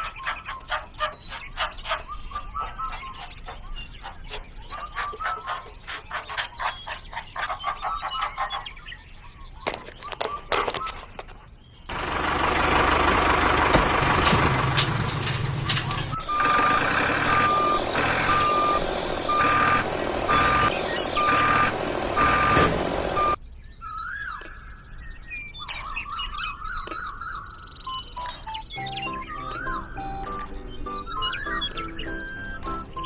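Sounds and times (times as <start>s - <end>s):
engine running: 9.7s - 23.4s
vehicle reversing alarm beeping: 14.0s - 23.4s, 27.9s - 33.0s.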